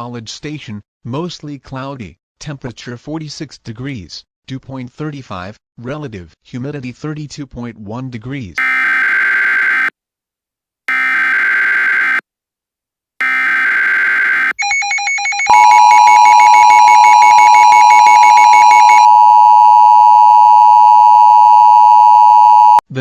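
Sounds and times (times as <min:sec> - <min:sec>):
steady high alarm tone: 0:10.9 - 0:12.2, 0:13.2 - 0:22.8.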